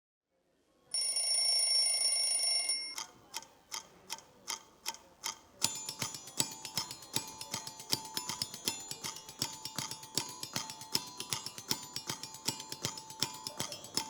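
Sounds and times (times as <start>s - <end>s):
alarm clock ringing: 1.0s - 3.0s, 5.6s - 14.0s
clock ticking: 2.9s - 14.0s
music with mallet percussion: 5.6s - 14.0s.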